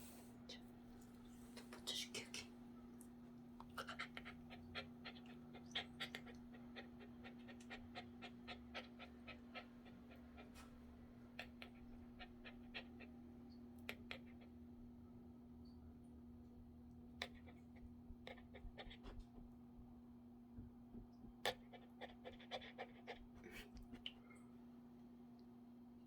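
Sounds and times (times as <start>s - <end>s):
small dog panting: 3.6s - 13.2s, 21.5s - 24.0s.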